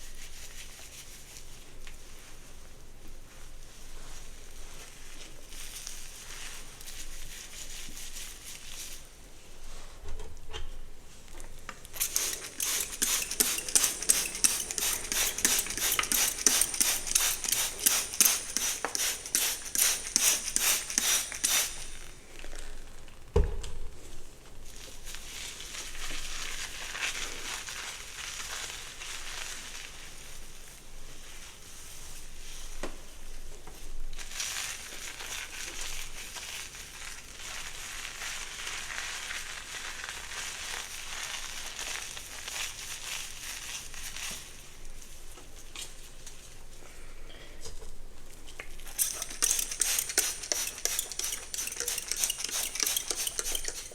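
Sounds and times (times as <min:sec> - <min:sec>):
hairbrush stroking through hair: 0:12.0 - 0:22.2, 0:48.8 - 0:53.9
thump: 0:23.4 - 0:23.9.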